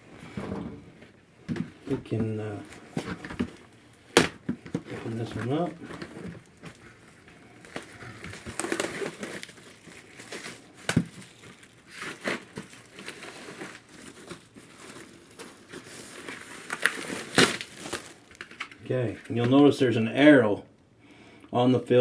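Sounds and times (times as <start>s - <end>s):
filter scraping and crinkling: 0.1s - 19.7s.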